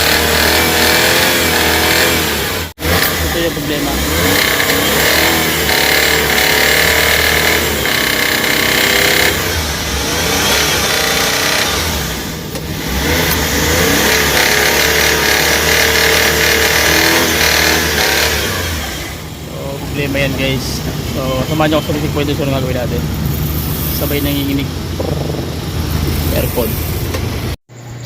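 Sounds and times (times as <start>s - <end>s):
car engine revving: 0.0s - 27.6s
engine knocking: 4.2s - 11.9s, 13.7s - 18.5s.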